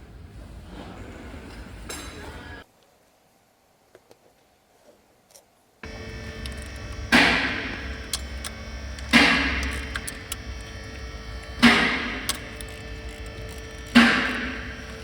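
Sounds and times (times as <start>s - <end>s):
low drone with held tones: 5.8s - 15.0s.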